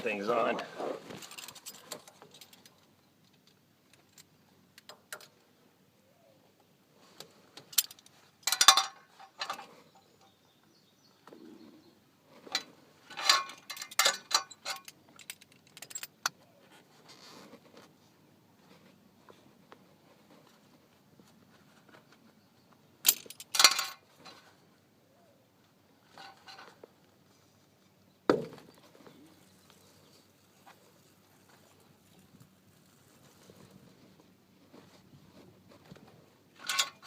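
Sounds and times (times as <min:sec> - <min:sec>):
metal tools clinking: 0:01.2 - 0:03.0, 0:07.6 - 0:10.3, 0:12.5 - 0:16.4, 0:23.0 - 0:24.5, 0:36.6 - 0:37.0.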